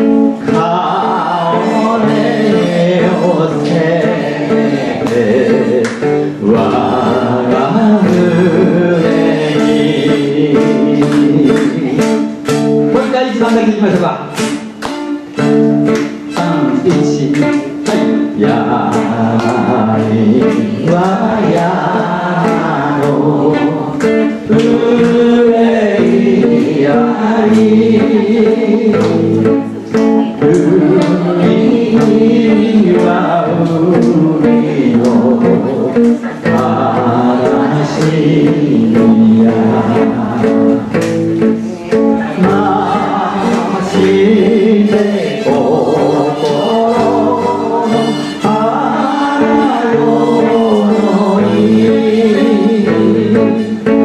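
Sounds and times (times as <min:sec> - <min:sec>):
person singing slow ballad: 0:00.0 - 0:12.7, 0:16.1 - 0:54.0
guitar accompaniment: 0:00.0 - 0:54.0.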